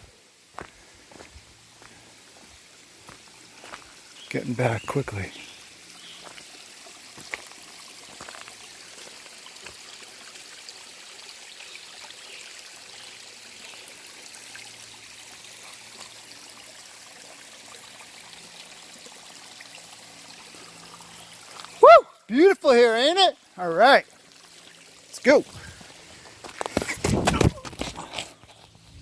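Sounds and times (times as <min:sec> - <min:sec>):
stream trickling over rocks: 0:00.0 - 0:29.0.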